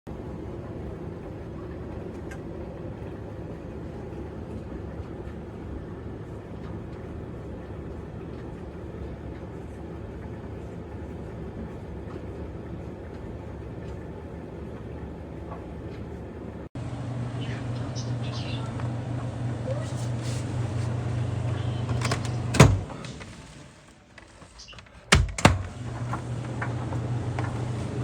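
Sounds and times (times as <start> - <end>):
low mechanical hum and rumble: 0.1 - 28.0.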